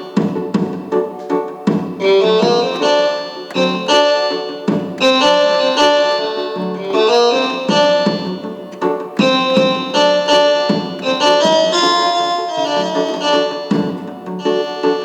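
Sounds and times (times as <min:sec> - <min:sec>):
keyboard melody with reed pipe voice: 0:00.0 - 0:15.0
steady drum beat: 0:01.7 - 0:05.8, 0:07.7 - 0:12.1, 0:13.7 - 0:14.3.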